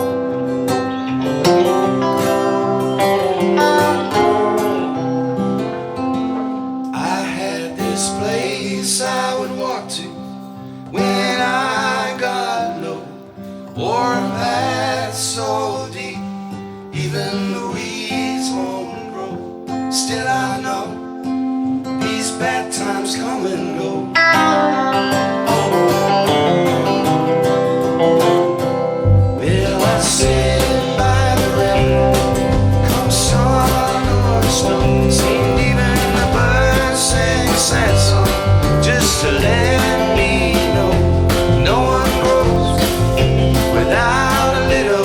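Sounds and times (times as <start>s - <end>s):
strummed acoustic guitar: 0.0s - 45.0s
person singing: 7.0s - 21.2s, 22.0s - 26.5s, 29.4s - 45.0s
heavy low bass: 29.0s - 45.0s.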